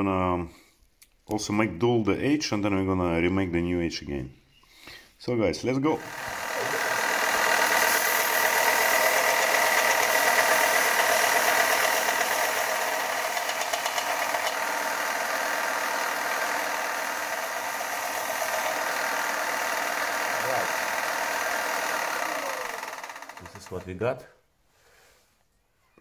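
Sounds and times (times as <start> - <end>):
power grinder grinding steel: 5.9 - 24.0.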